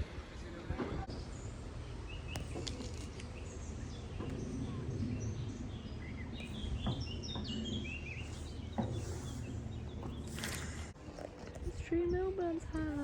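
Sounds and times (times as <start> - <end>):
small birds chirping: 1.0 - 13.0
steady low rumble: 3.2 - 13.0.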